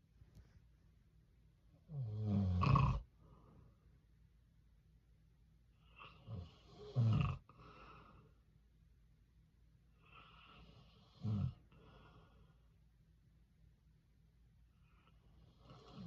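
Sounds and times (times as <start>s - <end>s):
man snoring: 1.9s - 3.0s, 6.2s - 7.5s, 10.6s - 11.6s
soft breathing: 7.5s - 8.5s, 10.0s - 12.8s.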